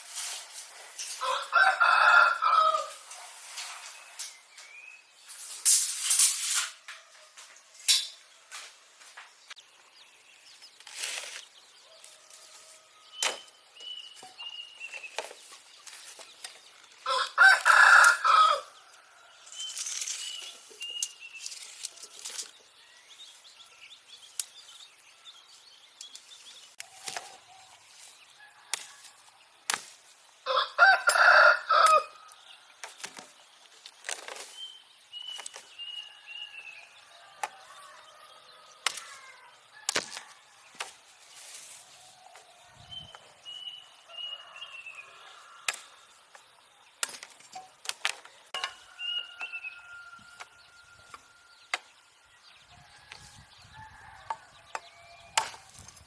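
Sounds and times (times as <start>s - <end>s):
rooster crowing: 1.2s - 3.0s, 17.1s - 18.8s, 30.5s - 32.2s, 48.6s - 51.7s, 52.8s - 55.7s.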